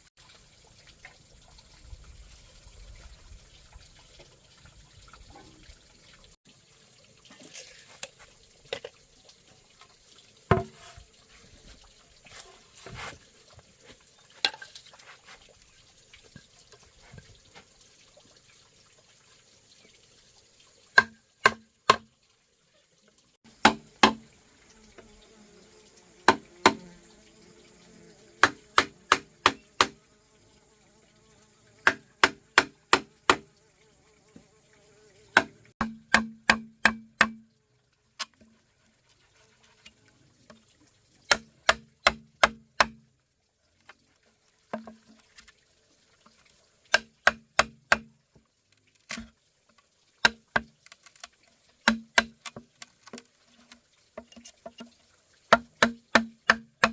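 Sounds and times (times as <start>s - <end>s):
hand tool striking wood: 10.5s - 11.0s, 21.0s - 22.1s, 23.6s - 24.2s, 26.2s - 26.9s, 28.4s - 30.0s, 31.8s - 33.5s, 35.4s - 37.4s, 41.3s - 43.0s, 46.9s - 48.1s, 50.2s - 50.7s, 51.8s - 52.6s, 55.5s - 56.9s.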